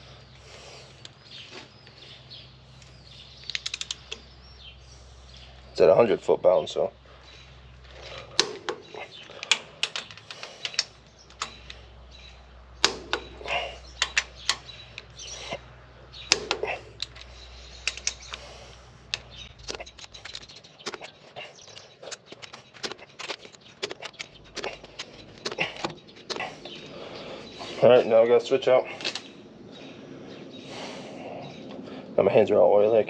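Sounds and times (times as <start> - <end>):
ratcheting wrench clicking: 3.4 - 4.3, 7.9 - 15.6, 16.2 - 26.5.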